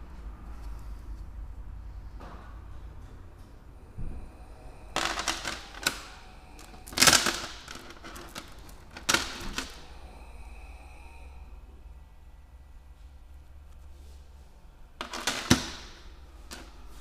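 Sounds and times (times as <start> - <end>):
metal engine parts clattering: 5.0 - 9.8, 15.0 - 16.8.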